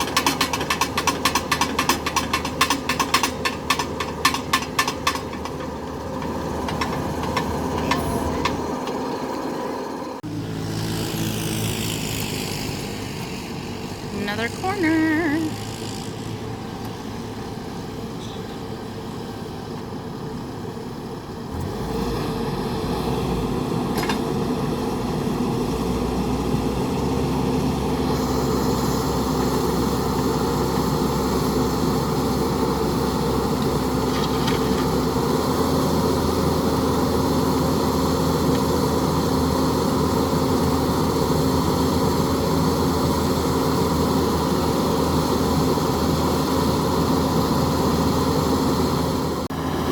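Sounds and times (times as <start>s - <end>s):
engine running steadily: 0.0s - 49.9s.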